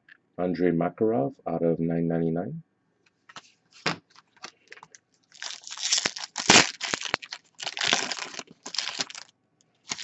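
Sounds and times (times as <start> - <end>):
plastic wrapper crinkling: 4.1 - 10.0.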